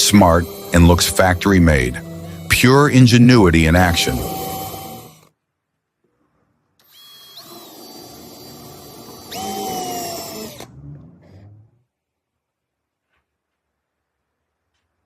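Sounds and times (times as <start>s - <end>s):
power drill whine: 0.0s - 5.3s, 6.8s - 11.6s.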